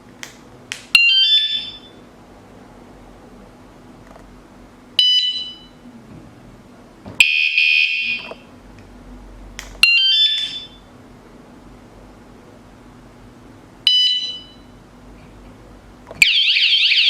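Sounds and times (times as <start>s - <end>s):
faint steady hum: 0.0s - 17.0s
electronic bike alarm bursts: 1.0s - 2.0s, 5.0s - 5.7s, 7.2s - 8.3s, 9.8s - 10.9s, 13.9s - 14.8s, 16.2s - 17.0s.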